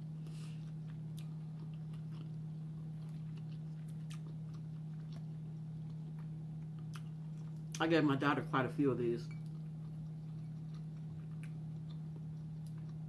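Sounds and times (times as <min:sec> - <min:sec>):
steady low hum: 0:00.0 - 0:13.0
person chewing crunchy food: 0:00.1 - 0:07.8, 0:09.3 - 0:13.0.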